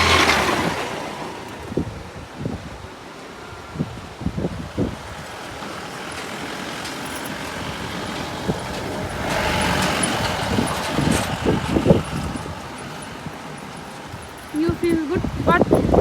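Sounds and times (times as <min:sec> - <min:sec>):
vehicle passing close by: 0:00.0 - 0:02.7, 0:04.4 - 0:16.0
wind thumping on microphone: 0:07.3 - 0:16.0.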